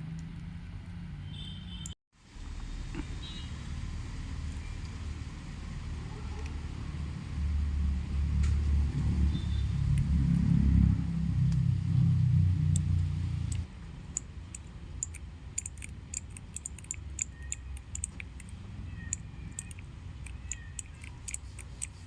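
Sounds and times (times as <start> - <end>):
low rumble: 2.4 - 13.6
mechanical key switches clicking: 13.5 - 22.0.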